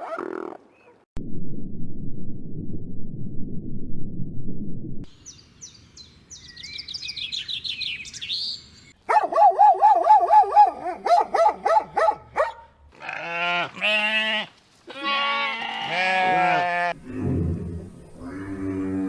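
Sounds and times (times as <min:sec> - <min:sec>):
small bird chirping: 0:05.1 - 0:09.0.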